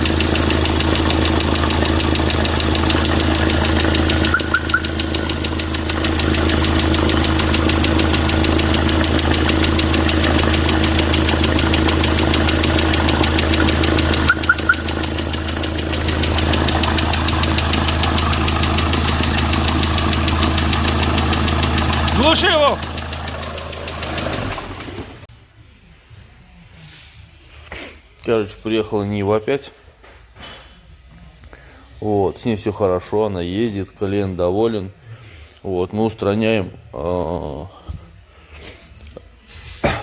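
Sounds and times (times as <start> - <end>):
diesel engine idling with knock: 0.0 - 25.3.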